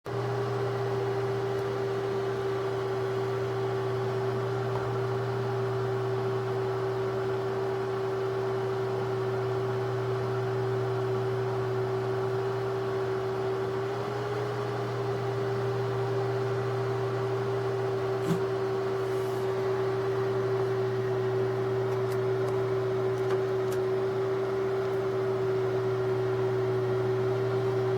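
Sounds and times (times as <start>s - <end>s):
machine hum: 17.0s - 27.9s.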